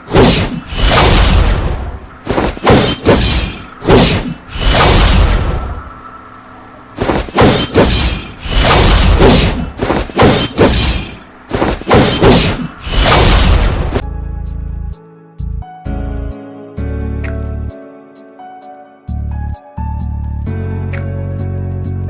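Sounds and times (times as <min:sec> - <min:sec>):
deep rumble: 0:00.0 - 0:14.9
music: 0:14.0 - 0:22.0.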